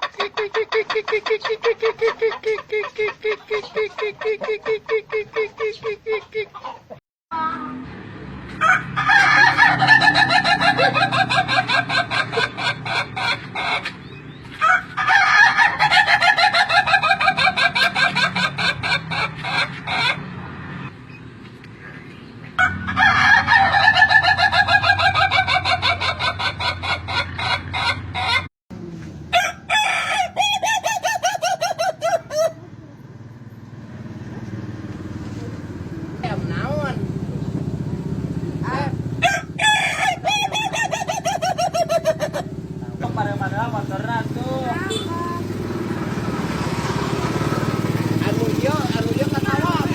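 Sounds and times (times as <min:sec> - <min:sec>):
roosters crowing like laughter: 0:00.0 - 0:07.0, 0:08.5 - 0:20.4, 0:22.6 - 0:28.5, 0:29.3 - 0:32.7, 0:38.5 - 0:44.4.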